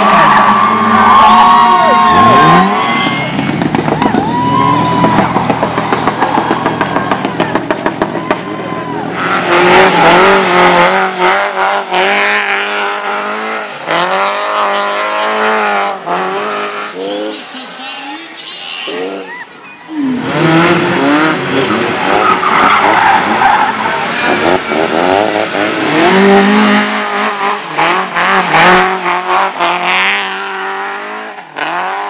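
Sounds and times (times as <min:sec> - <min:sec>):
racing engines revving: 0:00.0 - 0:32.0.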